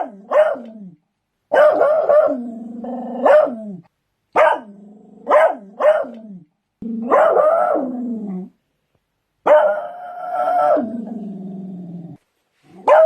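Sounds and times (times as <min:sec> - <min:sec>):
dog barking: 0:00.0 - 0:00.7, 0:01.5 - 0:02.4, 0:03.2 - 0:03.6, 0:04.4 - 0:04.7, 0:05.3 - 0:06.2, 0:07.0 - 0:07.8, 0:09.4 - 0:09.9, 0:12.8 - 0:13.0.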